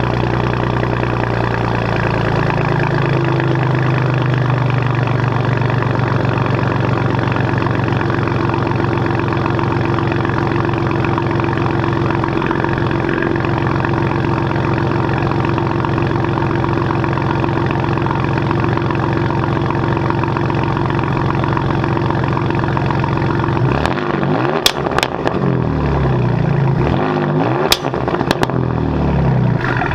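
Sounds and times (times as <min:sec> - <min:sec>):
car engine idling: 0:00.0 - 0:29.9
engine revving: 0:23.6 - 0:29.9
exhaust pops: 0:24.5 - 0:25.4, 0:27.6 - 0:28.6.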